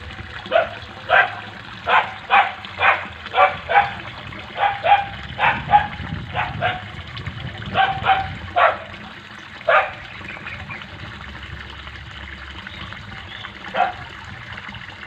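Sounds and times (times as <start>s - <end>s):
dog barking: 0.5s - 6.9s, 7.7s - 8.9s, 9.7s - 10.0s, 13.7s - 14.1s.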